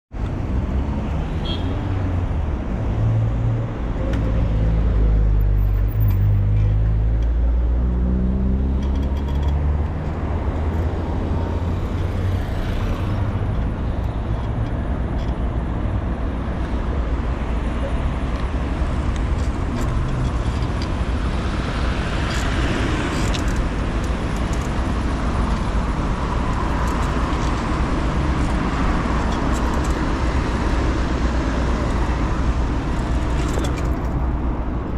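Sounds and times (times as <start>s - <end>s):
traffic noise: 0.1s - 34.9s
vehicle engine rumbling: 0.2s - 34.9s.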